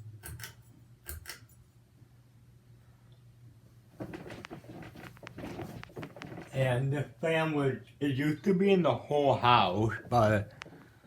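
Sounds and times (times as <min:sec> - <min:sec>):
ceiling fan humming: 0:00.0 - 0:11.0
irregular clicks and rattles: 0:04.0 - 0:06.6.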